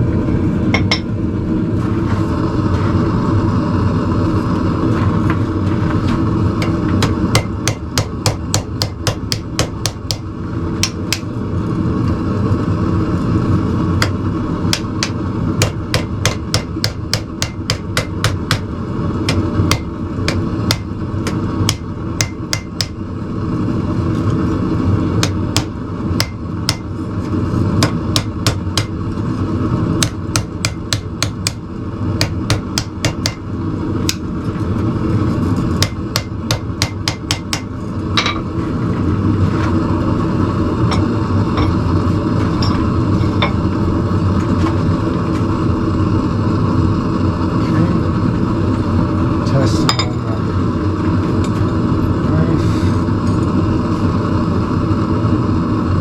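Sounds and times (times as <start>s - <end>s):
hammer striking steel: 0.8s - 1.1s, 6.6s - 11.3s, 14.0s - 18.7s, 19.3s - 23.0s, 25.2s - 26.9s, 27.8s - 29.0s, 30.0s - 31.6s, 32.2s - 33.5s, 35.8s - 38.4s.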